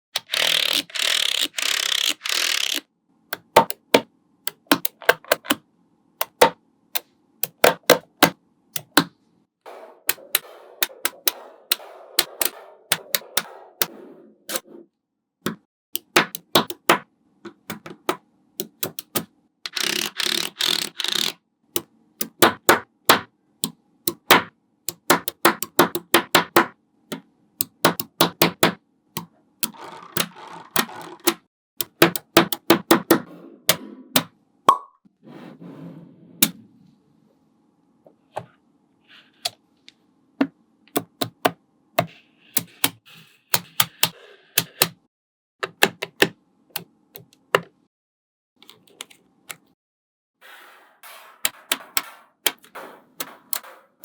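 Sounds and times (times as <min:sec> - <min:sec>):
magnetic balls clicking together: 0:00.2 - 0:02.8, 0:16.0 - 0:33.2
magnetic balls scraping: 0:29.6 - 0:31.5.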